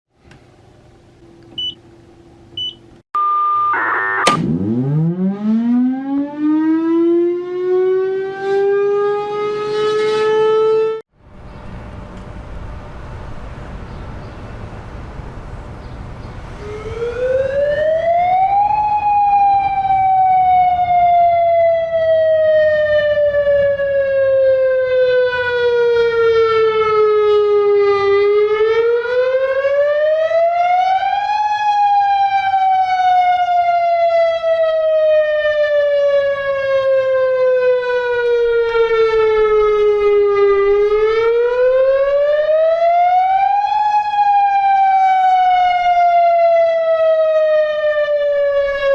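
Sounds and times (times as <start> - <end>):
warning siren wailing: 3.2 - 11.0, 15.1 - 48.9.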